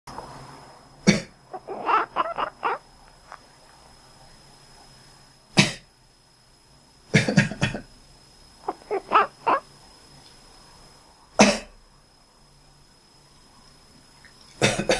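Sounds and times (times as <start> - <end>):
cat chirping: 1.5 - 2.8, 8.6 - 9.6
person coughing: 7.2 - 7.8, 11.4 - 11.7, 14.6 - 14.9.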